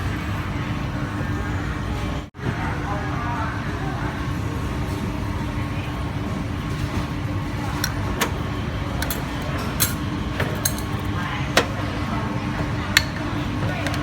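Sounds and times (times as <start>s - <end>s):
street background rumble: 0.0s - 14.0s
constant low hum: 4.9s - 14.0s.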